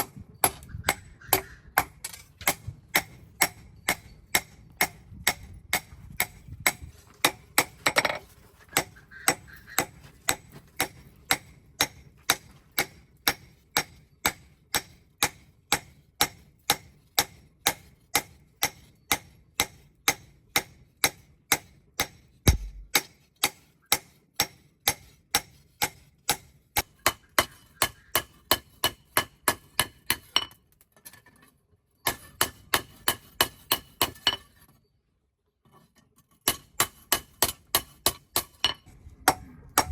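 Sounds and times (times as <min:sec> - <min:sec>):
heavy deep thud: 0:22.5 - 0:22.9.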